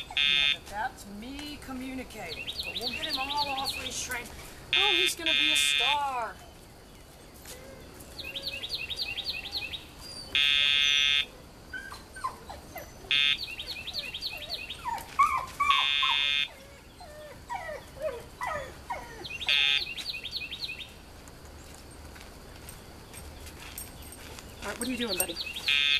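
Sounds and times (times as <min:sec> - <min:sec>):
puppy whining: 0:07.4 - 0:19.8.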